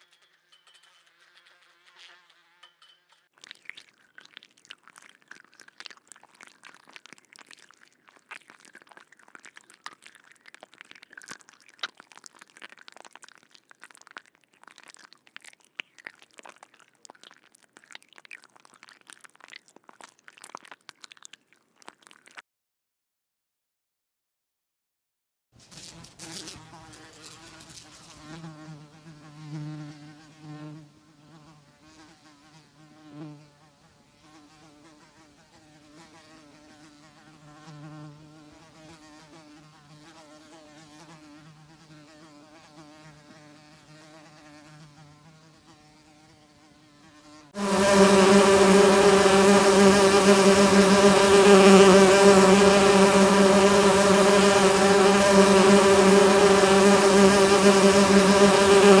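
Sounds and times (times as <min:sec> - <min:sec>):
insect wings buzzing: 0:47.6 - 0:59.0.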